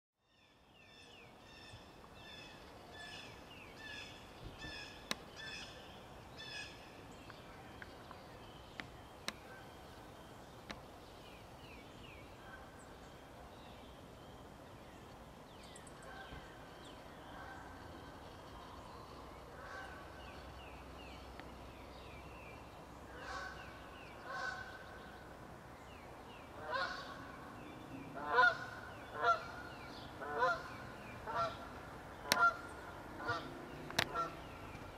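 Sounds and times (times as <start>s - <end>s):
goose honking: 26.6s - 27.2s, 28.2s - 29.6s, 30.2s - 31.7s, 32.3s - 34.4s.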